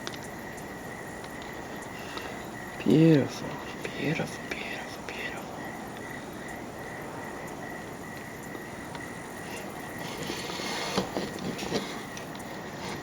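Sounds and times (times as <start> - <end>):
insect chirping: 0.0 - 13.0
steady hiss: 0.0 - 13.0
soft knocks and rustles: 10.0 - 13.0.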